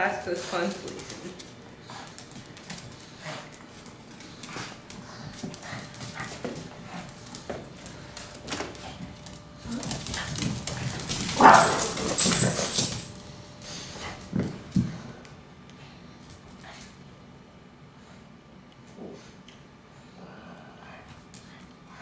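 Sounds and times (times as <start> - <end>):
dogs tapping and scuffling: 0.3 - 15.3
dog noises: 8.7 - 12.9.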